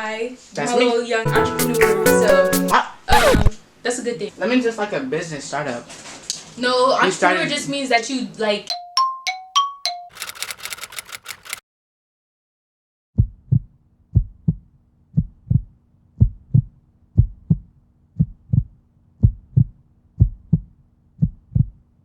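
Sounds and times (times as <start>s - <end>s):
heartbeat thumps: 13.2s - 21.8s.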